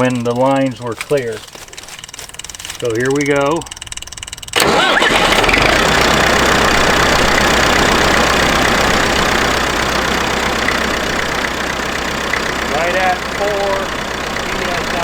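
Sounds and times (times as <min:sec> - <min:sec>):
tractor diesel engine starting: 0:00.0 - 0:15.0.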